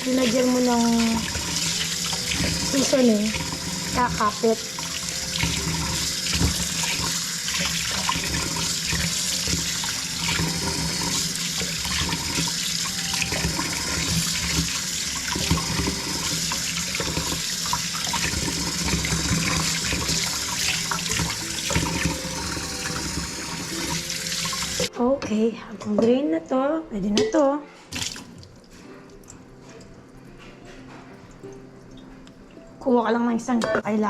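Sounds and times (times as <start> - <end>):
faucet running into a sink: 0.0 - 24.9, 27.9 - 28.6.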